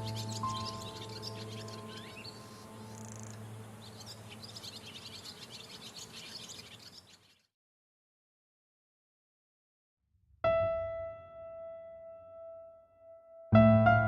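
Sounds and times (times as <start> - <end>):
soft music chord with drone: 0.0 - 4.8, 10.5 - 14.0
small birds chirping: 0.0 - 7.5.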